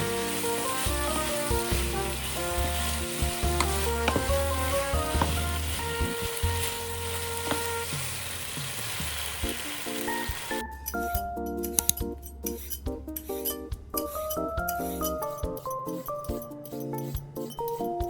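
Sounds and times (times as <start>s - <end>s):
food sizzling in a pan: 0.0s - 10.6s
stirring clicks: 0.0s - 10.6s
background music: 0.0s - 18.0s.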